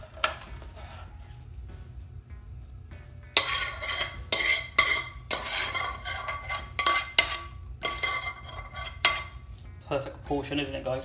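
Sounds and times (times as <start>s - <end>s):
metal spoon knocking on pan: 3.4s - 9.4s.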